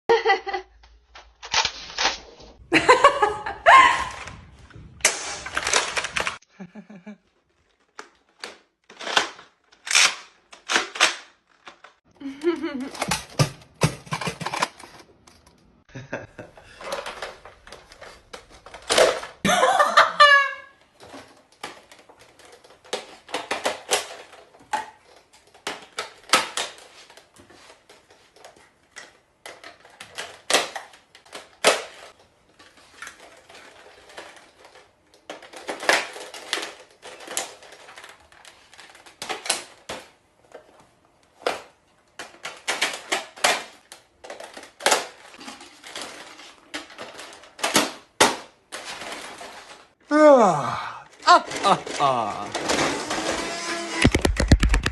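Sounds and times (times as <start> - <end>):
person crying out: 3.6 - 4.2, 50.1 - 52.8.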